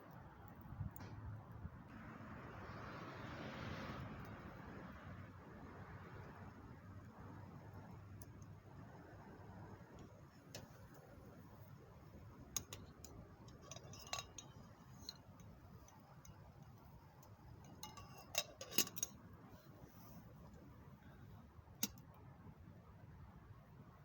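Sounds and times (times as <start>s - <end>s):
tableware clinking: 13.5s - 15.2s, 17.7s - 19.1s.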